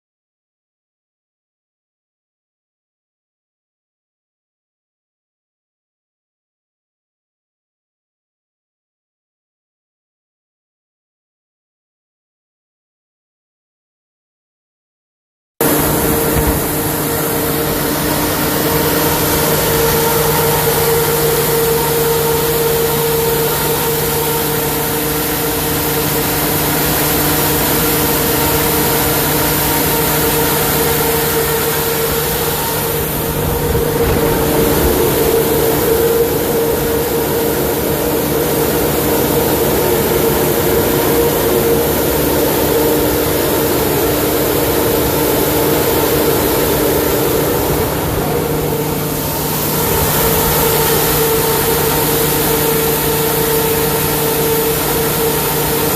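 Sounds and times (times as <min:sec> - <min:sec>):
generator engine running: 0:15.6 - 0:55.9.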